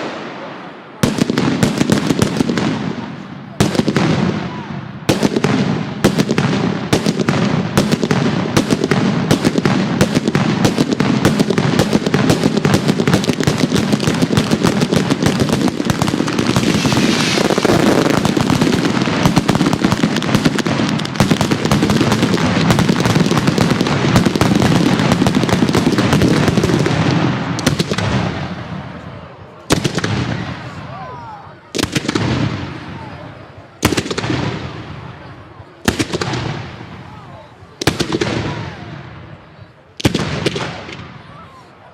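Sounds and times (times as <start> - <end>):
firecrackers banging: 0.0 - 30.8, 31.6 - 41.3.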